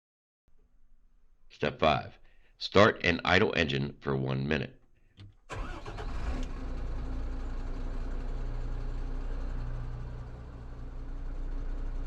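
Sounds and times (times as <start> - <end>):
diesel engine idling: 5.5 - 12.0.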